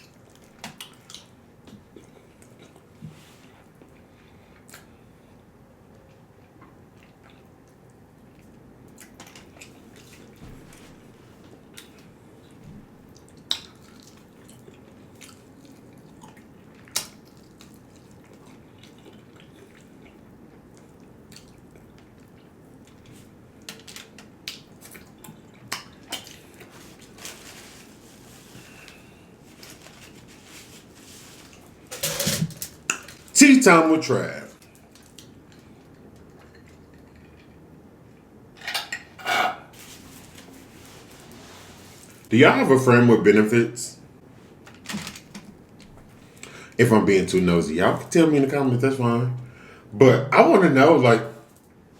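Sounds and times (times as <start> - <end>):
person chewing: 6.4 - 10.4, 13.1 - 23.2.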